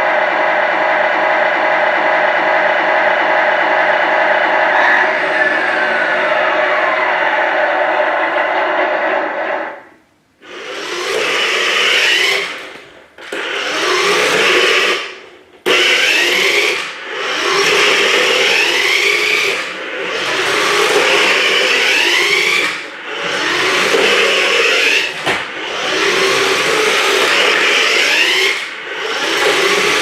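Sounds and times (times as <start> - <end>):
toy car motor whirring: 10.4 - 30.0.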